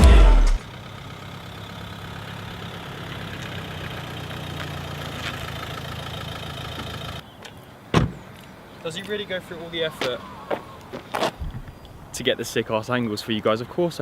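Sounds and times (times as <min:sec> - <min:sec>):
car engine idling: 0:00.0 - 0:07.2.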